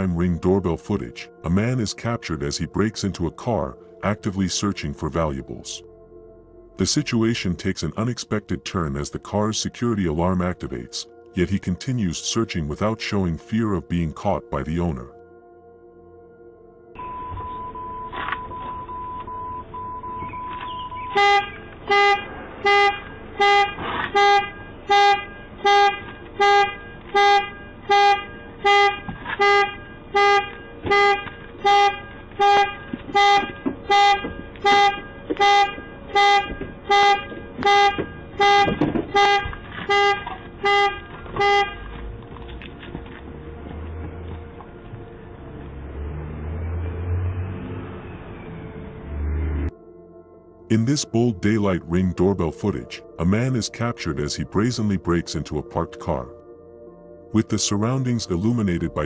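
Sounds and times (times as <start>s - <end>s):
car horn honking: 20.6s - 42.0s.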